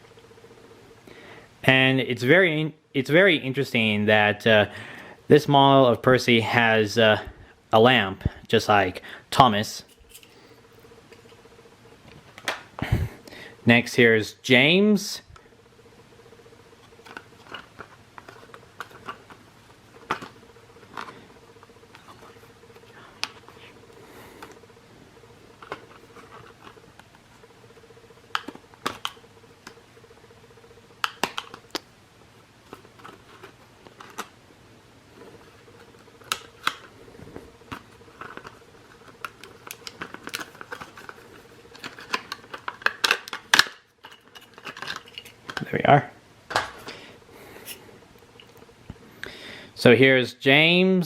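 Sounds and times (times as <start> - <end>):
faint steady hum: 0.0 - 51.0
plastic packaging crinkling: 35.3 - 45.8.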